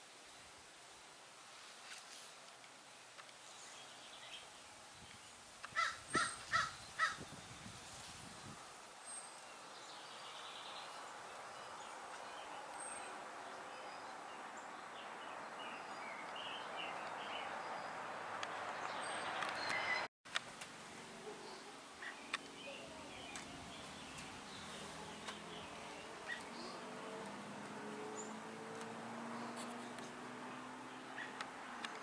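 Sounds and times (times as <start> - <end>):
outdoor background rush: 0.0 - 32.0
crow cawing: 5.8 - 7.2.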